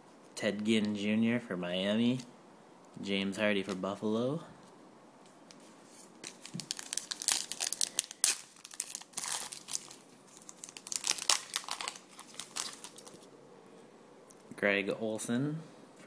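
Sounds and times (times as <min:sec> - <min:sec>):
foil wrapper tearing and crinkling: 0:06.2 - 0:13.2.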